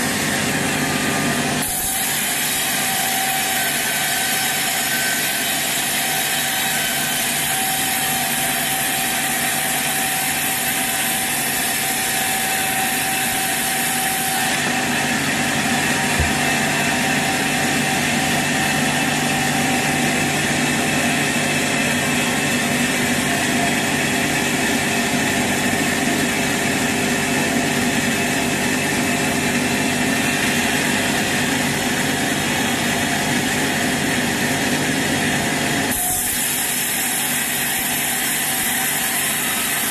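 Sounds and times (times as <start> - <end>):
sawmill machinery sawing wood: 0.0 - 39.9
short knock: 16.1 - 16.6.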